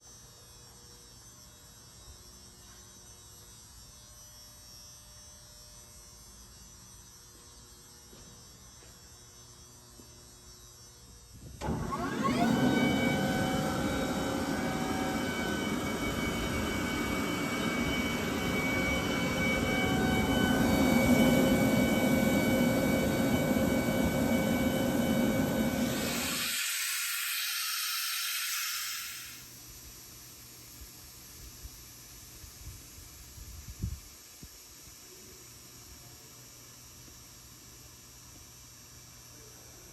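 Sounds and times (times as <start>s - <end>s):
air compressor running: 11.4s - 29.6s
hiss of air: 13.0s - 29.8s.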